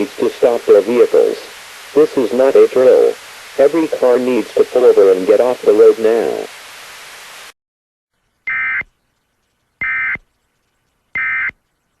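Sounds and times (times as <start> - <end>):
warbling digital data tones: 11.1 - 11.6.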